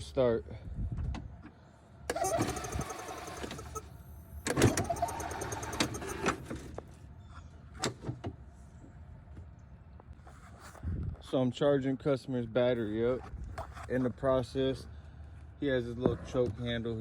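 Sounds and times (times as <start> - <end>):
starter motor whirring: 2.1 - 6.7.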